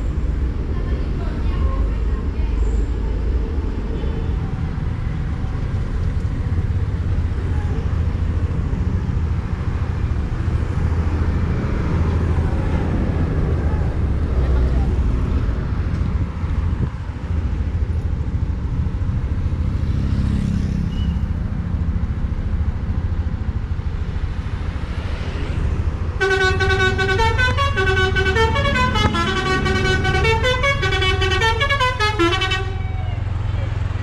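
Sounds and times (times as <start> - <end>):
bus diesel engine rumbling: 0.0 - 34.0
multi-tone horn melody: 26.2 - 33.0.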